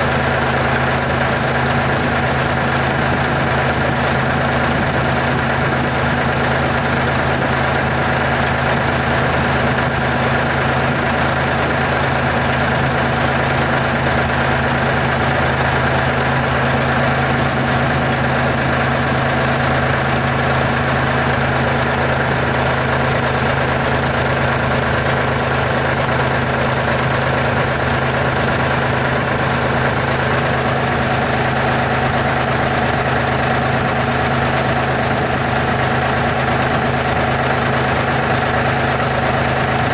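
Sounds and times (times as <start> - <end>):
diesel truck engine idling: 0.0 - 39.9.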